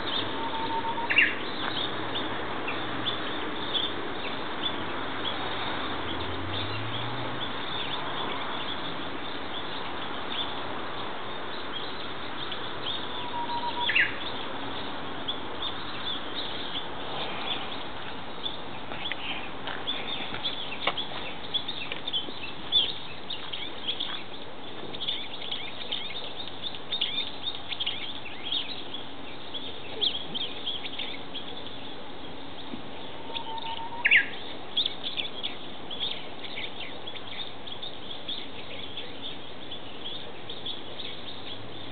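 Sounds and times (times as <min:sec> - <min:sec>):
bird whistle song phrase: 0:00.0 - 0:01.4, 0:12.9 - 0:14.2, 0:33.2 - 0:35.2
bird short high chirps: 0:00.0 - 0:01.8, 0:12.9 - 0:14.2, 0:33.2 - 0:35.2.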